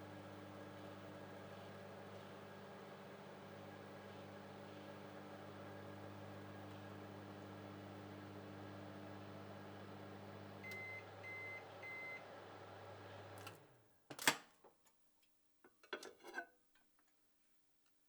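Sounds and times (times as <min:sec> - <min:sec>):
microwave oven humming: 0:00.0 - 0:13.8.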